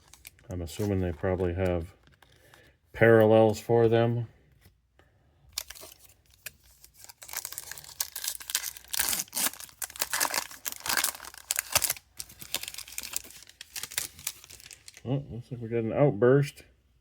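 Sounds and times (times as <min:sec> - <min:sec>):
card pack wrapper tearing and crinkling: 0:00.0 - 0:03.4, 0:05.5 - 0:15.1.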